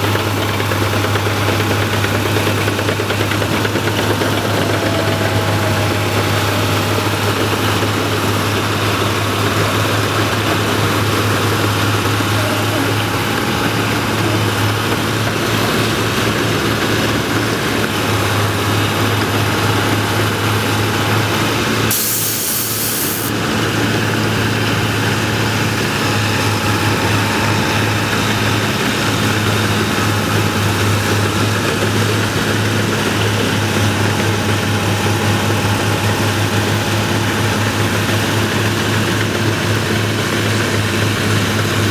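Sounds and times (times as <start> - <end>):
harvester engine droning: 0.0 - 41.9
brief hiss: 21.9 - 23.3.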